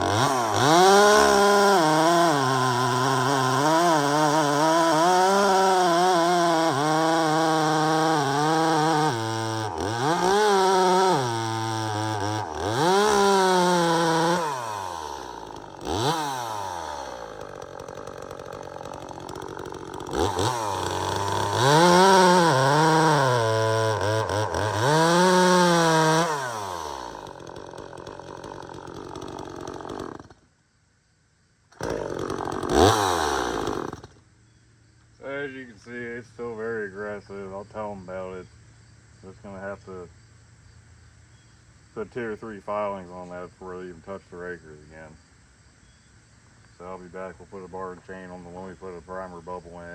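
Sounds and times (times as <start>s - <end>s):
chainsaw revving: 0.0s - 30.4s, 31.7s - 34.2s.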